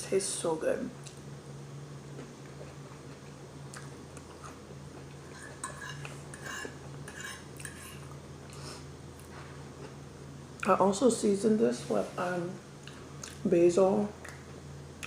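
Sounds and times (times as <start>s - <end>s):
steady low hum: 0.0s - 15.0s
chewing: 2.1s - 8.6s, 12.8s - 13.4s.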